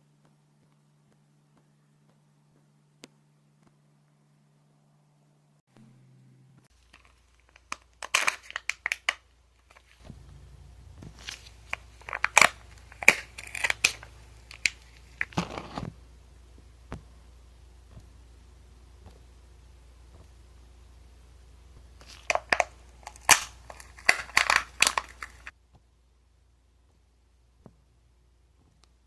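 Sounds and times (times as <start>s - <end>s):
plastic packaging crinkling and tearing: 6.8s - 10.0s, 11.1s - 15.9s, 22.0s - 25.5s.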